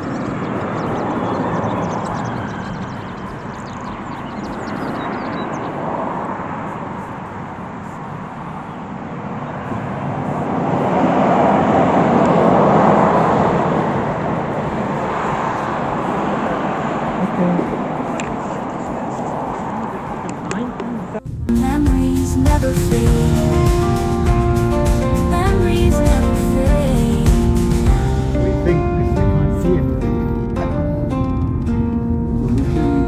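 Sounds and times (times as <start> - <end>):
vehicle rushing rumble: 20.5 - 33.0.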